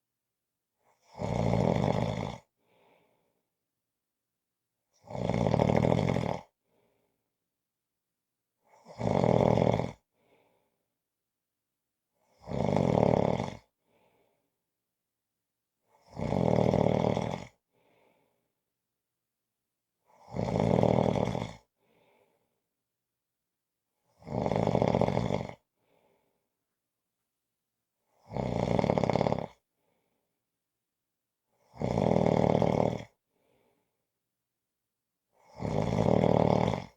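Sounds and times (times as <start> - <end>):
person snoring: 1.0 - 2.5, 5.1 - 6.5, 8.9 - 10.0, 12.4 - 13.7, 16.1 - 17.6, 20.2 - 21.6, 24.2 - 25.6, 28.2 - 29.6, 31.6 - 33.1, 35.4 - 36.9.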